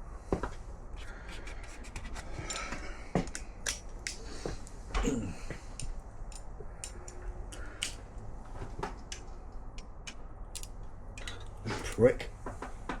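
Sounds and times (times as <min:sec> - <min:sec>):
steady low hum: 0:00.0 - 0:13.0
hand tools clicking on a bolt: 0:05.6 - 0:08.0, 0:09.0 - 0:12.1.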